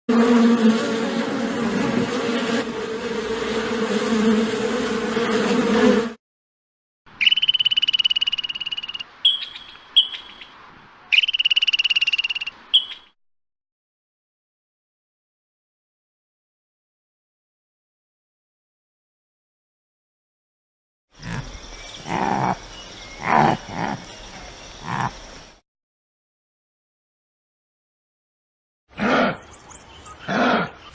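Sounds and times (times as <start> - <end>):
flying insect buzzing: 0.1 - 6.2, 21.2 - 25.5
large animal calling: 21.2 - 22.6, 23.2 - 24.1, 24.8 - 25.2.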